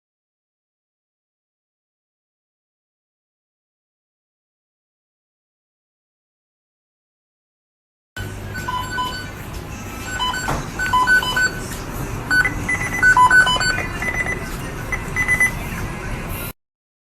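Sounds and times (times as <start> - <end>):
high electronic beeps tune: 8.2 - 9.4, 10.0 - 11.7, 12.3 - 15.6
steady noisy background: 8.2 - 16.6.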